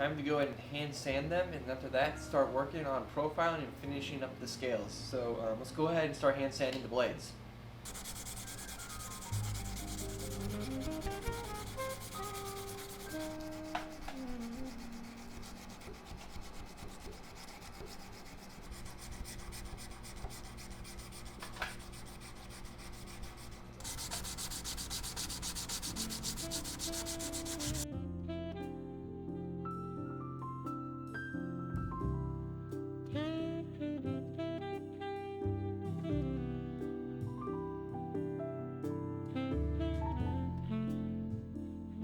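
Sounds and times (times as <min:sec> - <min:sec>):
sandpaper rubbing on knife blade: 0:07.9 - 0:27.8.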